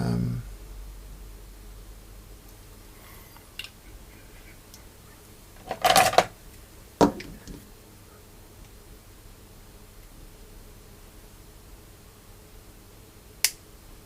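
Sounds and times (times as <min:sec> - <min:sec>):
sharp snap: 0:13.4 - 0:13.6.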